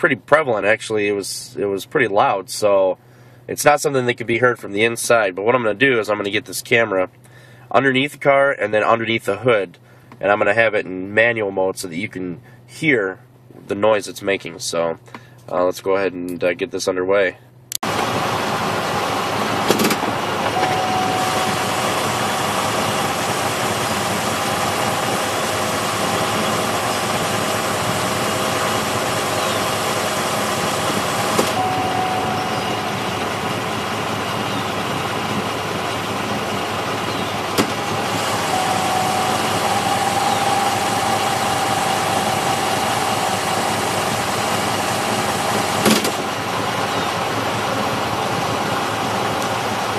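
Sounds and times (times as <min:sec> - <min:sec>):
car engine idling: 0:17.4 - 0:49.9
steady whine: 0:17.8 - 0:49.9.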